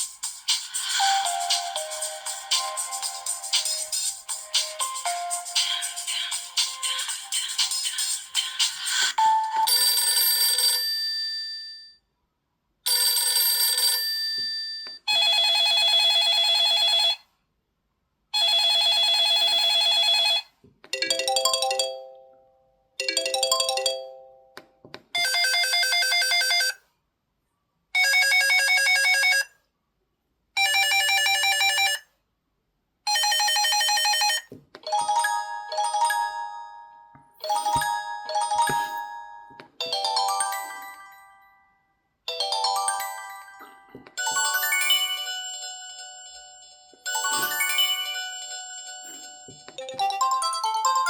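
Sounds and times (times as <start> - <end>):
mobile phone alert tones: 35.9 - 40.0, 47.1 - 48.3.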